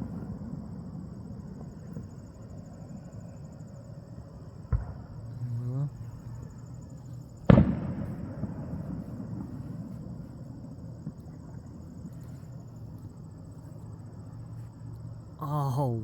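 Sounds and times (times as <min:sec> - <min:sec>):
firework shell bursting boom: 0:07.5 - 0:09.6.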